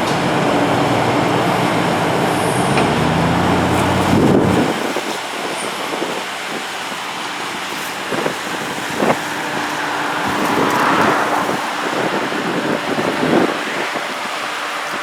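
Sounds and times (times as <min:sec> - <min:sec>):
vehicle passing close: 0:00.0 - 0:05.0, 0:08.2 - 0:13.4
traffic noise: 0:00.0 - 0:15.0.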